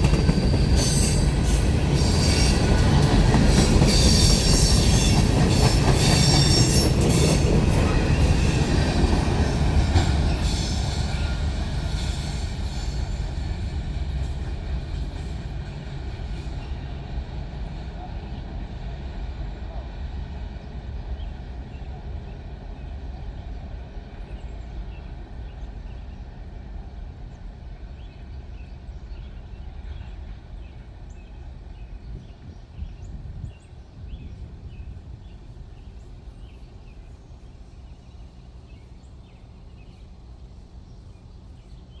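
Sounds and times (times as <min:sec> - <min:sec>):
freight train rolling past: 0:00.0 - 0:42.0.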